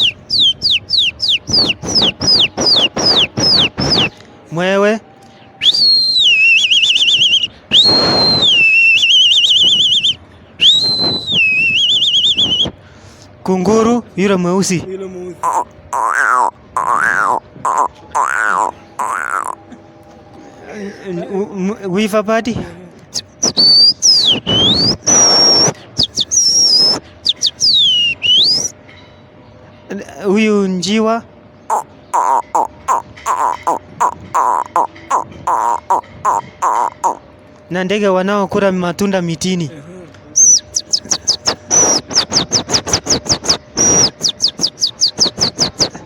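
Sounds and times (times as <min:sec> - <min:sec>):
man whistling bird call: 0:00.0 - 0:04.2, 0:05.6 - 0:12.8, 0:15.4 - 0:19.6, 0:23.1 - 0:28.8, 0:31.7 - 0:37.2, 0:40.4 - 0:46.0.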